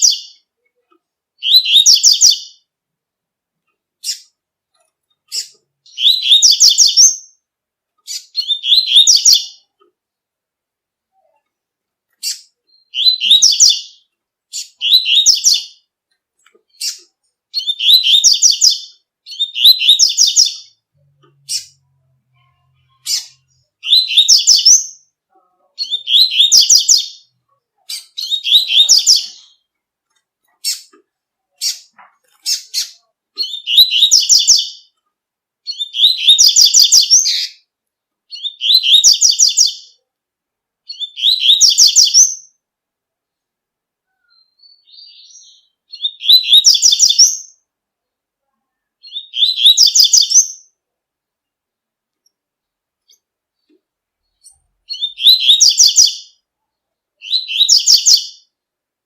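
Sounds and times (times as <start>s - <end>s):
bird singing rapid high notes: 16.7s - 25.1s.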